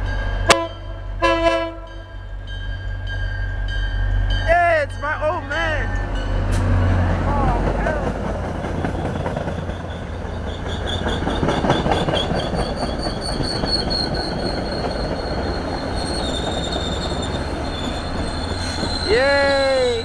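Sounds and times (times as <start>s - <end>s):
train cars rumbling and clacking: 0.0s - 20.0s
steel wheels squealing: 8.6s - 20.0s.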